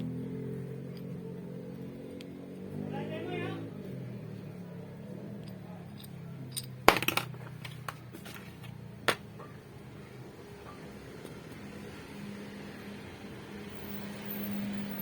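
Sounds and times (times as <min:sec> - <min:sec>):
metal parts clicking: 0:05.4 - 0:08.7.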